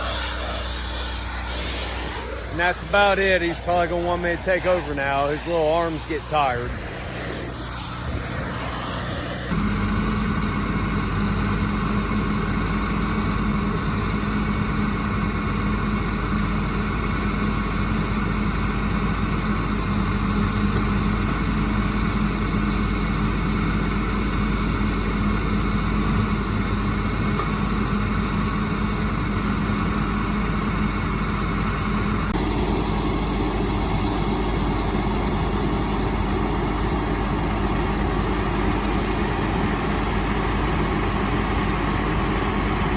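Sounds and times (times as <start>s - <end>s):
engine humming: 0.0s - 9.7s.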